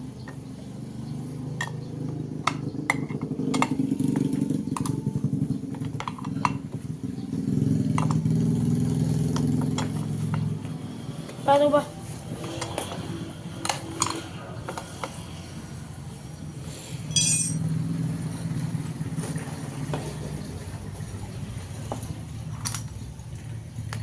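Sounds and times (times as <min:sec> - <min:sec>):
small metal parts clinking: 0:17.1 - 0:17.7.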